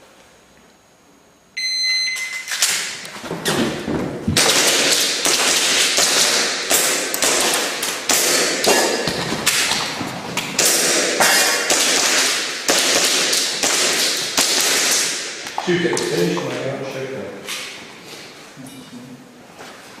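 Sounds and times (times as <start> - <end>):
shot timer beep: 1.6 - 2.5
airsoft pistol shots: 4.4 - 9.8, 10.6 - 16.1.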